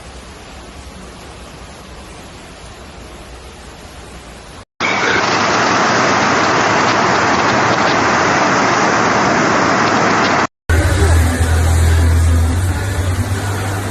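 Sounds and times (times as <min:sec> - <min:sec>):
faint hiss: 0:00.0 - 0:07.8
water rushing: 0:00.0 - 0:13.9.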